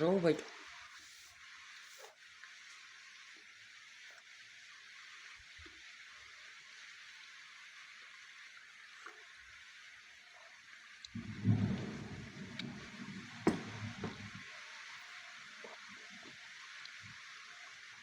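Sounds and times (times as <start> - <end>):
rain falling: 0.0 - 18.0
faint ticks: 10.4 - 14.4.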